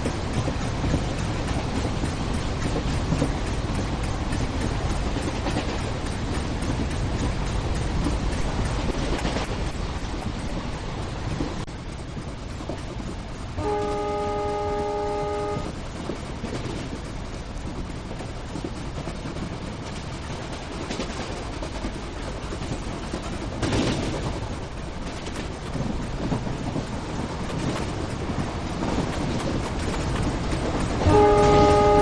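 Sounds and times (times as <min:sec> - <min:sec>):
train rumbling on rails: 0:00.0 - 0:32.0
train horn: 0:13.6 - 0:15.8, 0:31.0 - 0:32.0.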